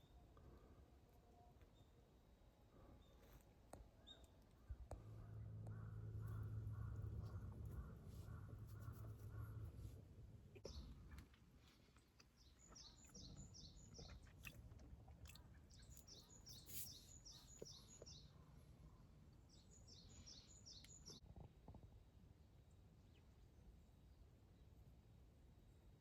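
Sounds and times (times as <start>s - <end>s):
low background rumble: 4.6s - 12.0s.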